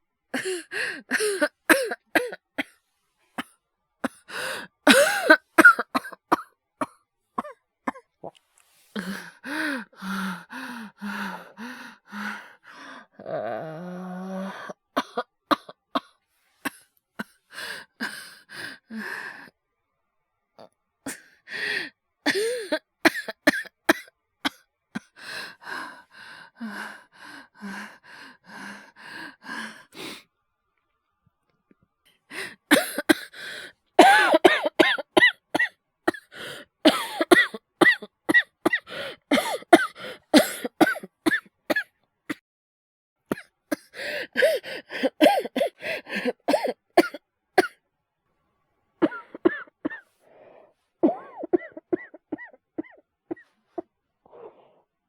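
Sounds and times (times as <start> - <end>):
man coughing: 4.9 - 6.2, 34.0 - 36.2, 36.9 - 41.8, 43.4 - 47.7.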